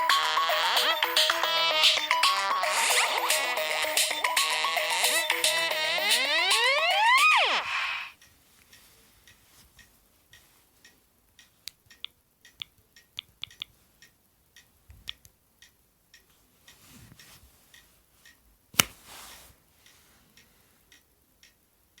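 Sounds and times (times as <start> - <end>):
clicks of phone being handled: 18.8 - 19.4.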